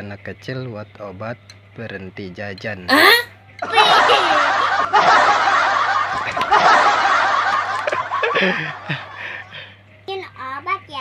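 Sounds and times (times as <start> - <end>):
group of people laughing: 3.6 - 9.7.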